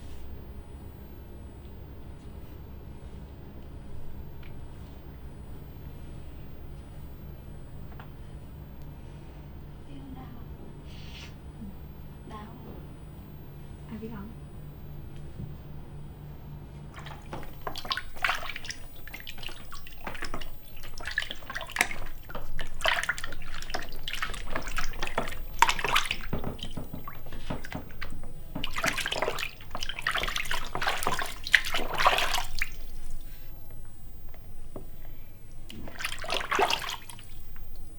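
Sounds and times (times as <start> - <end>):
water splashing and trickling: 17.0 - 33.3, 35.5 - 37.9.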